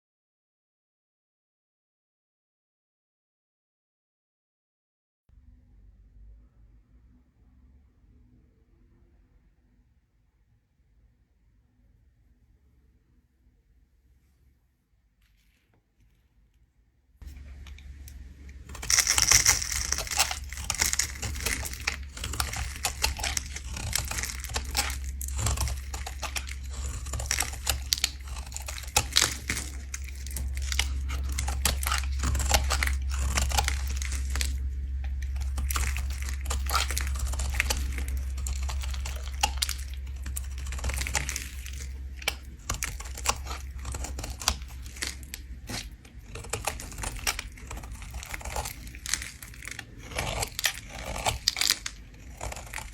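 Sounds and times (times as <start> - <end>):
low steady hum: 5.3 - 52.9
blade scraping soap: 17.2 - 52.9.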